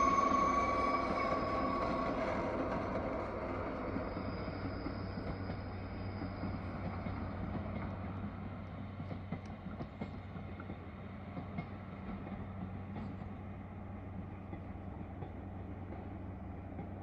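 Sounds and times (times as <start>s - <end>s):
high steady tone: 0.0s - 6.3s
train rolling past: 0.0s - 17.0s.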